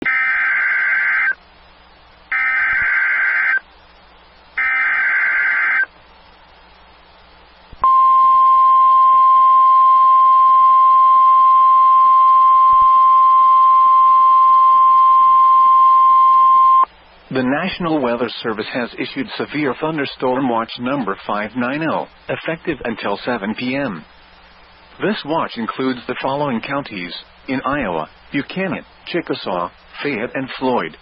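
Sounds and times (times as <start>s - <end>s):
steady warning alarm tone: 0.0s - 1.4s, 2.3s - 3.6s, 4.6s - 5.9s
screeching digital data bursts: 2.4s - 3.6s.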